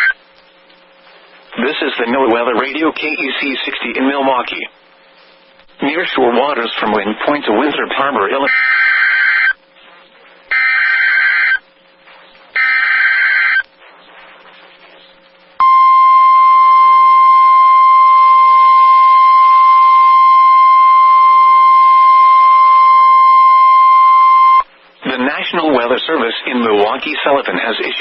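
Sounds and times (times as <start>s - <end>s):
steady alarm tone: 8.5s - 9.6s, 10.5s - 11.7s, 12.6s - 13.6s, 15.6s - 24.7s.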